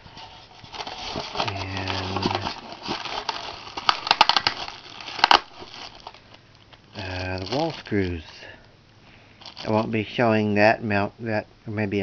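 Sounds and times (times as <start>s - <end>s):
plastic and cardboard rustling: 0.0s - 8.5s, 9.4s - 9.9s.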